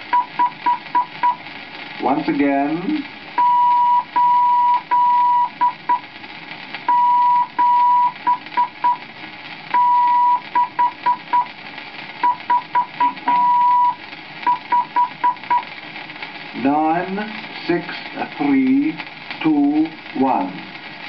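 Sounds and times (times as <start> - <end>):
morse code tone: 0.1 - 1.4, 3.4 - 6.0, 6.9 - 9.0, 9.8 - 11.5, 12.2 - 15.6
record surface clicks: 12.2 - 15.7.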